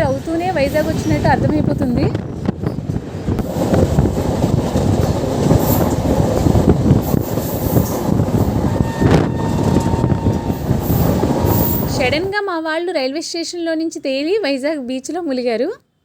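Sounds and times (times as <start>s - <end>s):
train wheels clattering over rails: 0.0s - 12.2s.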